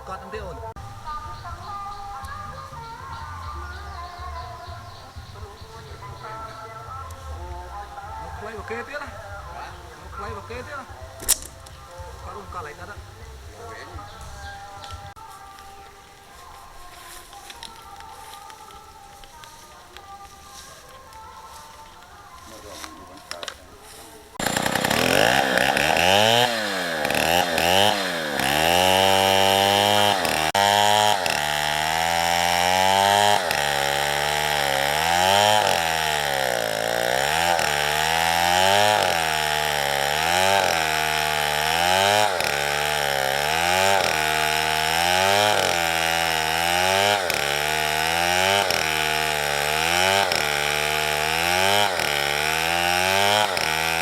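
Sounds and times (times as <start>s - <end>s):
chainsaw cutting wood: 0.0s - 54.0s.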